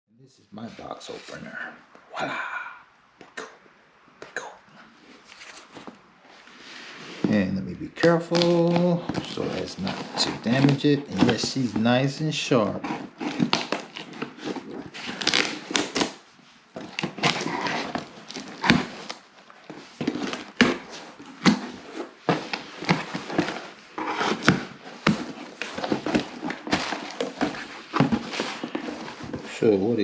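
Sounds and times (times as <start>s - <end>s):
cardboard box rustling: 8.0s - 16.1s, 16.8s - 30.0s
box cutter slicing cardboard: 12.7s - 16.2s.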